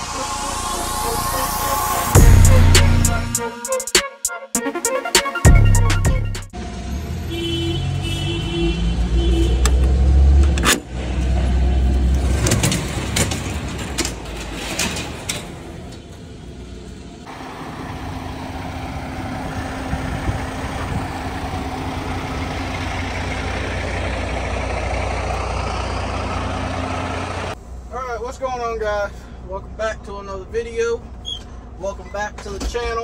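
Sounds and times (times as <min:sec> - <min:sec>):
diesel truck engine rumbling: 0:00.0 - 0:03.4, 0:05.5 - 0:33.0
diesel engine idling with hum: 0:15.6 - 0:33.0.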